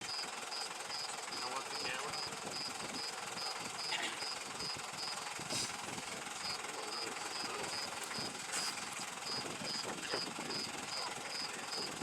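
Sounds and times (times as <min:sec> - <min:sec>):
insect chirping: 0:00.0 - 0:01.4, 0:02.1 - 0:05.2, 0:09.3 - 0:12.0
steady low rumble: 0:00.0 - 0:12.0.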